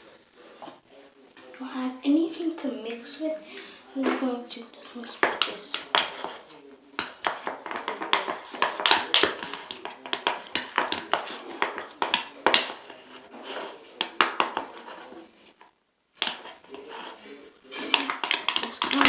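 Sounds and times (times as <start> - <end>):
stirrer clicking against dish: 4.8 - 14.9, 17.9 - 19.0.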